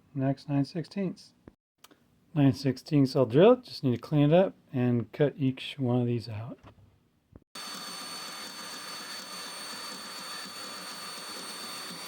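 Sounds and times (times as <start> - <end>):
power tool running: 7.6 - 12.0.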